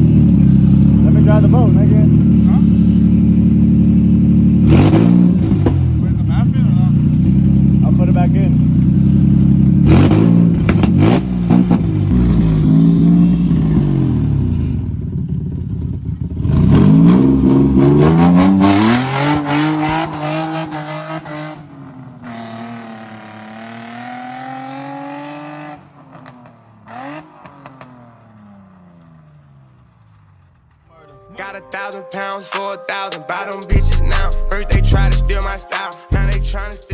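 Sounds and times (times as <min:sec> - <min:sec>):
car engine revving and accelerating: 0:00.0 - 0:15.0, 0:16.3 - 0:29.0.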